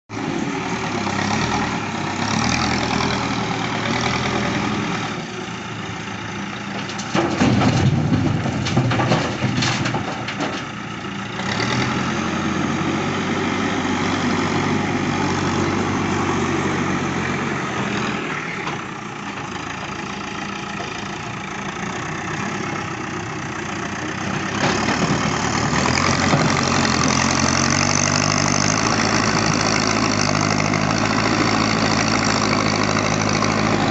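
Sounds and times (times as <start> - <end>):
diesel engine revving: 0.1 - 33.9
knocking and clanking: 6.8 - 10.7, 24.5 - 27.2.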